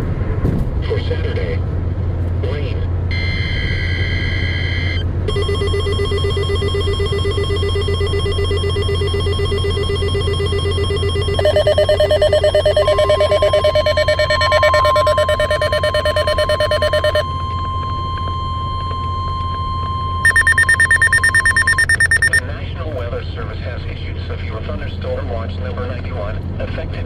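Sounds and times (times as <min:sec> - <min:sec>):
higher pulsing beep: 0:03.1 - 0:22.4
pulsing electronic alarm beeps: 0:03.1 - 0:22.4
two-tone data burst: 0:03.2 - 0:22.4
steady alert tone: 0:05.3 - 0:22.4.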